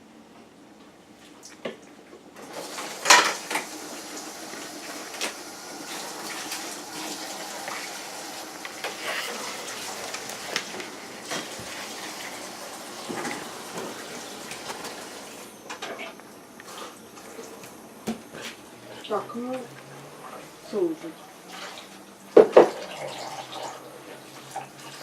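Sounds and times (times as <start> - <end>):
water running from a tap: 2.4 - 15.5, 21.4 - 25.0.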